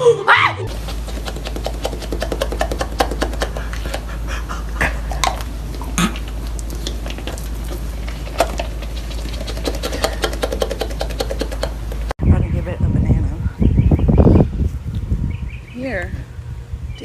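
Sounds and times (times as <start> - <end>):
steady low hum: 0.0 - 17.0
fast irregular clicking: 0.7 - 4.0, 8.4 - 12.1.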